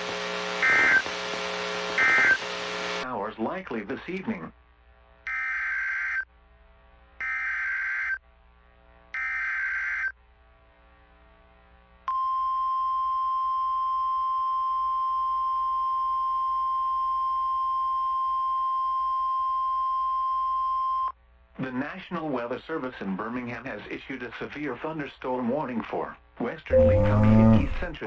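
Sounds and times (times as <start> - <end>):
steady warning alarm tone: 0.6 - 1.1, 2.0 - 2.4, 26.7 - 28.0.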